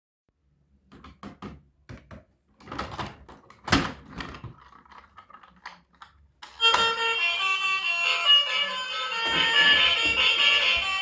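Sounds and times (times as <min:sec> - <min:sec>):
objects clicking and knocking: 0:00.9 - 0:06.9.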